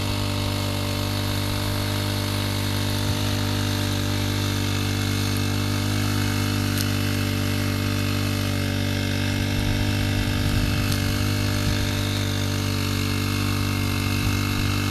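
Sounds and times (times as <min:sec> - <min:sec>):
pressure washer humming: 0:00.0 - 0:14.9
uneven low rumbling: 0:09.3 - 0:14.9.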